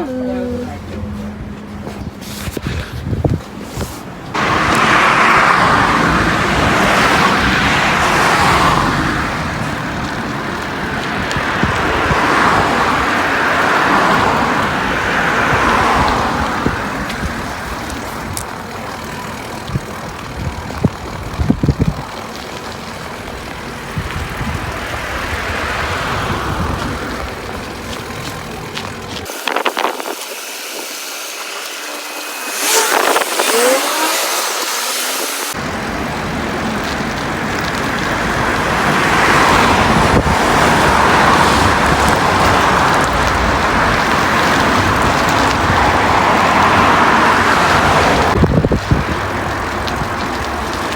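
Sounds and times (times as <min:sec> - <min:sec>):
wind rumble on microphone: 0:00.0 - 0:30.9, 0:35.2 - 0:50.9
cars passing: 0:00.0 - 0:50.9.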